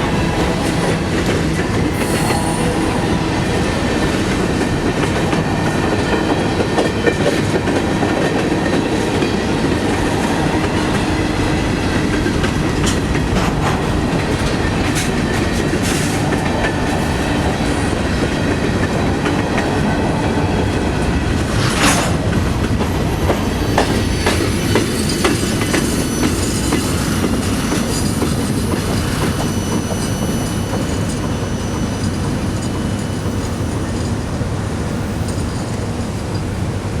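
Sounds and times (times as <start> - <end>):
freight train cars rolling past: 0.0 - 37.0
sharp metallic noise: 1.7 - 5.2
metallic wheel squeal: 23.2 - 34.2.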